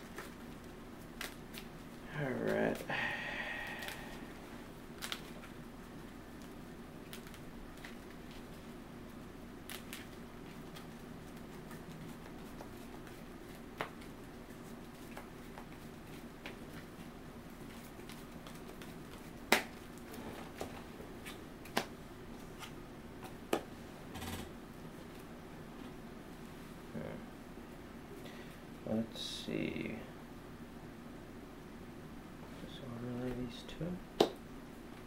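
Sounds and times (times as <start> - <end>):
low room hum: 0.0 - 35.0
cards shuffling: 5.0 - 5.6, 6.4 - 8.6, 9.6 - 23.6.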